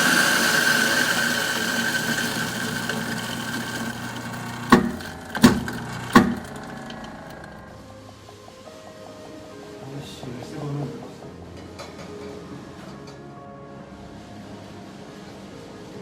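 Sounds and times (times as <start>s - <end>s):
steady whirring with held tone: 0.0s - 8.0s.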